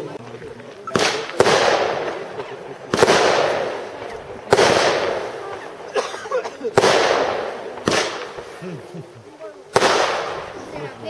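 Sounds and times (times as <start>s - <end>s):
firework cake bangs: 0.0s - 8.9s, 9.7s - 10.8s.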